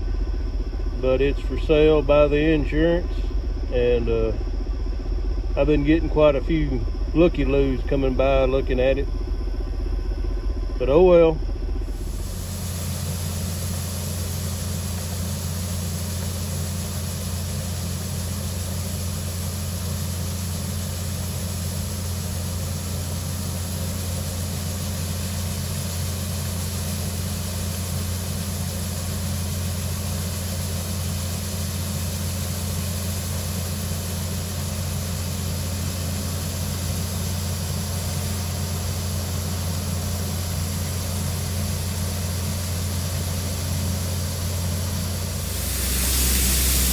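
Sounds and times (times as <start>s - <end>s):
large engine droning: 0.0s - 46.9s.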